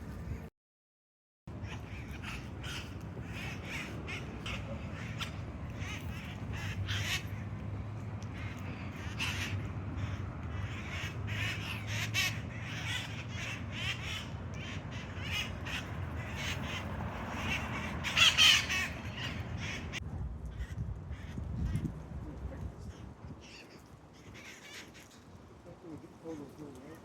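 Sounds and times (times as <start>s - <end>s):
parakeets squawking: 1.5s - 20.0s.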